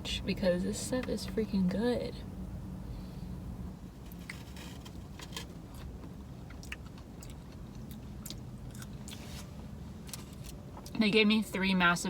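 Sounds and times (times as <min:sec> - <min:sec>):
low steady rumble: 0:00.0 - 0:12.0
close-miked chewing: 0:05.7 - 0:09.3.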